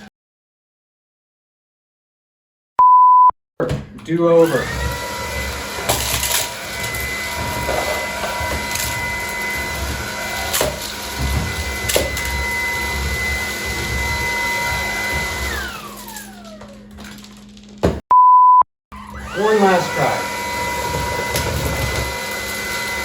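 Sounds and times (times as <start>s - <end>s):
vacuum cleaner motor whine: 4.3s - 17.2s, 19.0s - 23.0s.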